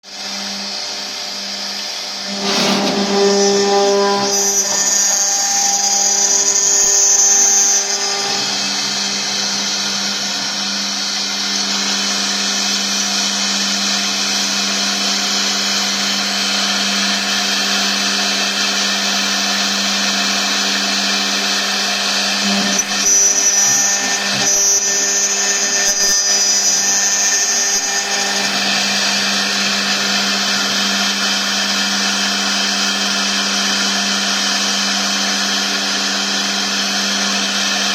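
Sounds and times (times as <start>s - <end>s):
router spindle hum: 0.1s - 37.9s
hissing metal cutting noise: 0.3s - 33.9s
high whine: 2.1s - 6.8s.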